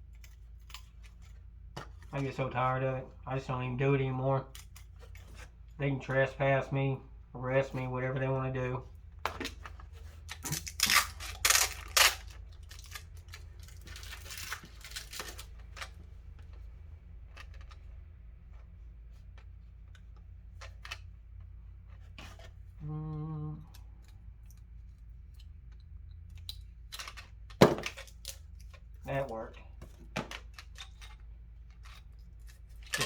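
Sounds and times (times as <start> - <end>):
packaging rustling: 9.4 - 16.4.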